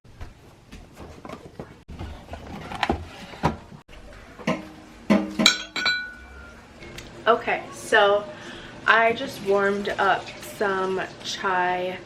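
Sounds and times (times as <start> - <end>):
kitchen items knocking and clattering: 0.1 - 7.0
ringing clink: 5.5 - 6.6.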